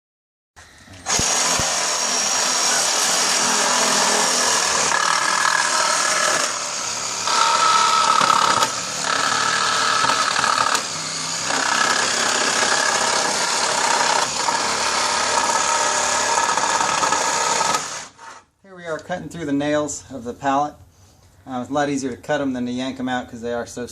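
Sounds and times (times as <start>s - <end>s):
reciprocating saw cutting nails: 1.1s - 18.4s.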